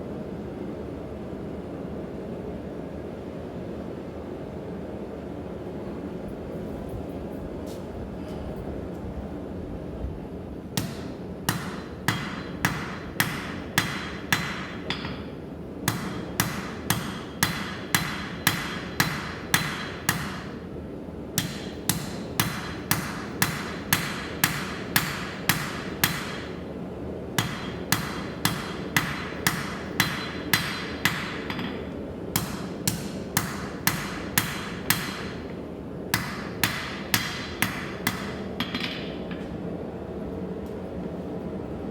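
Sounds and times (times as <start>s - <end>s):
steady low hum: 0.0s - 41.9s
hammer striking metal on anvil: 10.8s - 20.6s, 21.4s - 26.6s, 27.4s - 39.5s.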